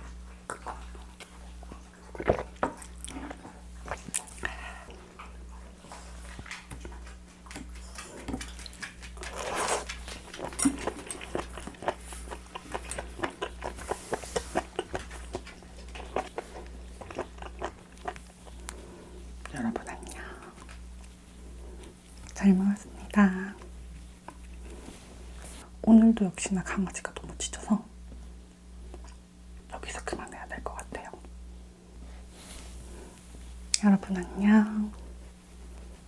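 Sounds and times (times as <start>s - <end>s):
wet chewing: 0.0s - 25.6s.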